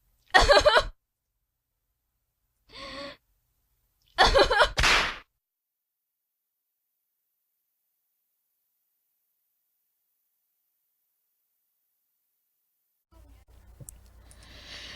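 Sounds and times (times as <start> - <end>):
sharp breath: 14.2 - 14.9.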